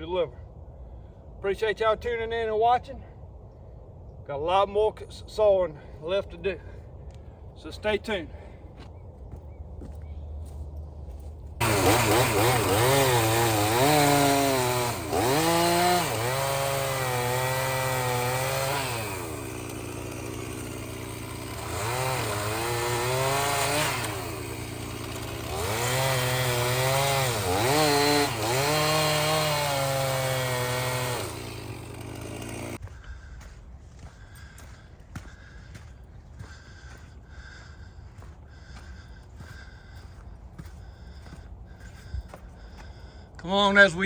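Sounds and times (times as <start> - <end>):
chainsaw cutting wood: 11.6 - 32.9.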